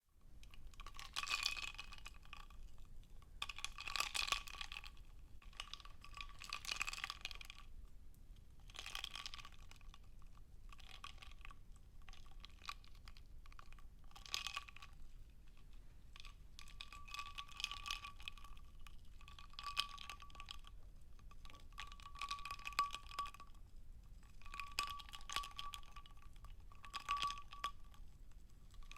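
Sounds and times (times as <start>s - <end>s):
ice cubes clinking in a glass: 26.8s - 28.0s.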